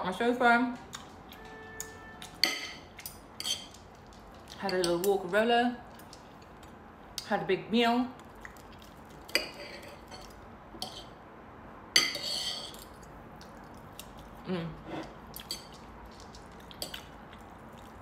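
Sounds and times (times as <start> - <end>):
cutlery clinking on a plate: 2.3 - 3.7.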